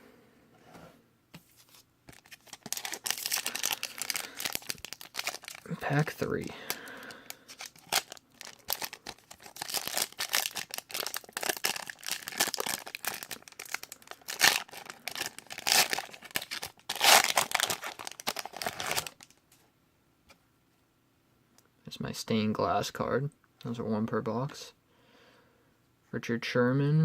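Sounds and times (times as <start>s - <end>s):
foil wrapper tearing and crinkling: 2.1s - 19.3s.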